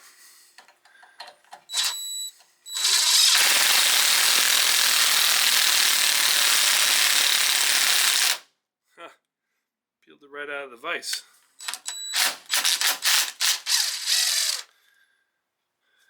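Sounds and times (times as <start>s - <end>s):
impact driver hammering: 2.8s - 8.4s.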